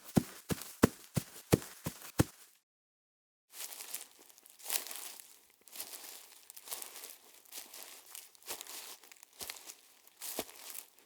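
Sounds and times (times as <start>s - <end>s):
footsteps crunching: 0.0s - 2.5s.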